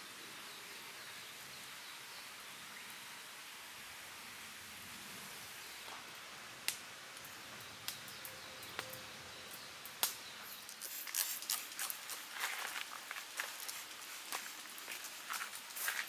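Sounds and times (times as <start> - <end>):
footsteps on dry forest floor: 10.5 - 16.0.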